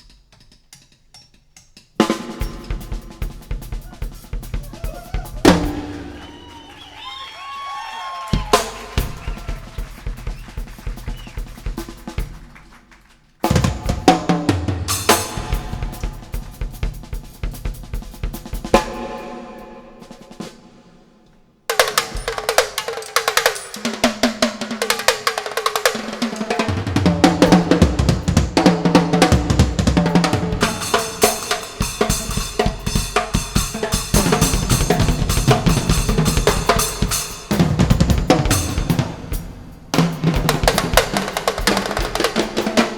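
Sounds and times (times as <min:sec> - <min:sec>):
drum-heavy music with bass beat: 0:02.0 - 0:06.9, 0:08.4 - 0:12.6, 0:13.4 - 0:19.2, 0:26.9 - 0:42.9.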